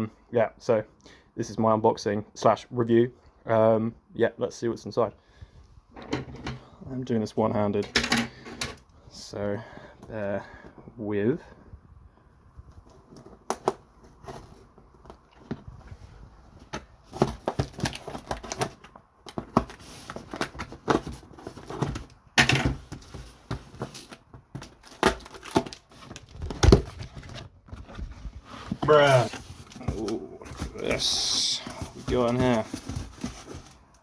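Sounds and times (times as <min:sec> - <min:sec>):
knocks and scrapes: 0:12.8 - 0:33.9
packaging tearing and crinkling: 0:17.2 - 0:22.2, 0:23.7 - 0:27.4.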